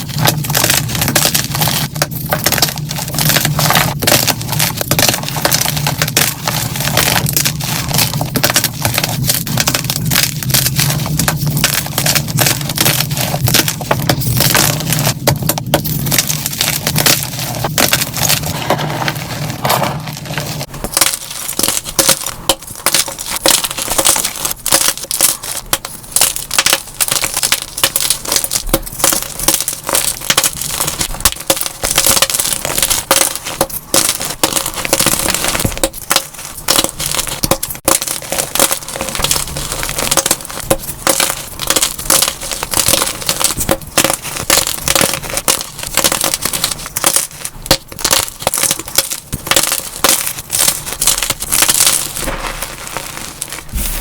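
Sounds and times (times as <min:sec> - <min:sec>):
chalk blocks crunching: 0:00.0 - 0:54.0.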